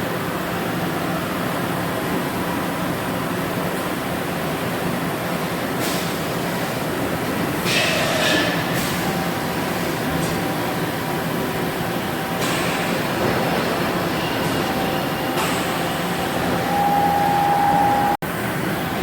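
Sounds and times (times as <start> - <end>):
machinery drone and hum: 9.2 - 19.0.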